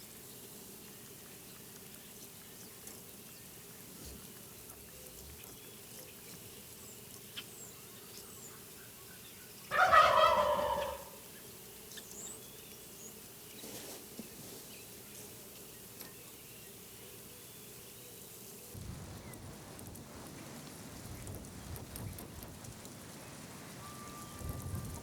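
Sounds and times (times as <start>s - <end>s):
turkey gobbling: 9.7s - 11.2s.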